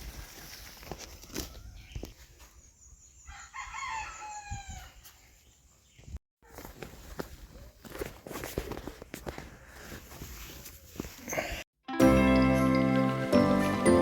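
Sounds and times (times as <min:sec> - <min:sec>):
rooster crowing: 0:03.3 - 0:05.0.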